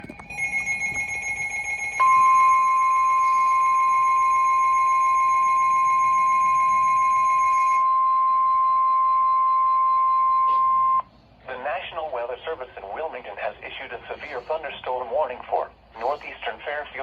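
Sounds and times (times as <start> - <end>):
continuous warning alert tone: 0.0 - 11.1.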